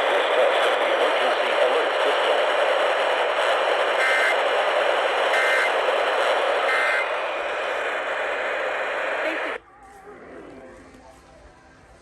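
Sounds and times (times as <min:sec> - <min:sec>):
radio hiss: 0:00.0 - 0:09.6.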